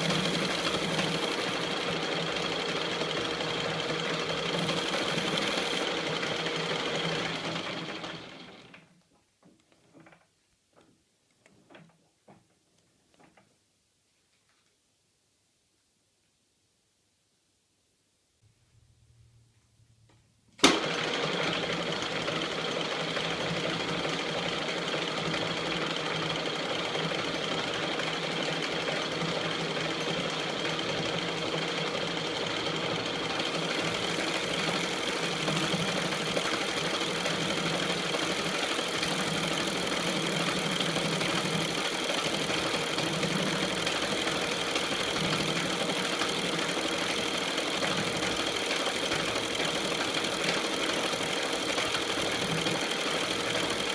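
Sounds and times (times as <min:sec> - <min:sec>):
metal lathe running: 0:00.0 - 0:08.6, 0:20.8 - 0:53.9.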